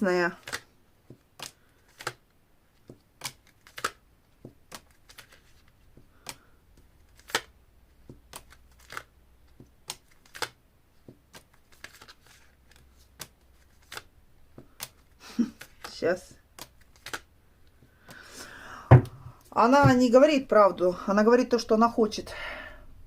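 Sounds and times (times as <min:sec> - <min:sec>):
cards being shuffled: 0:00.4 - 0:18.4.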